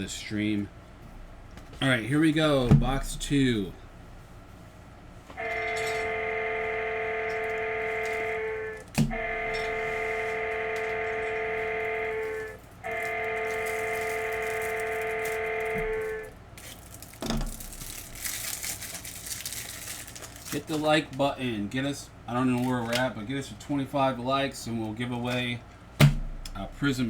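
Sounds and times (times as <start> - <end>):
train horn blasts: 5.4 - 16.3.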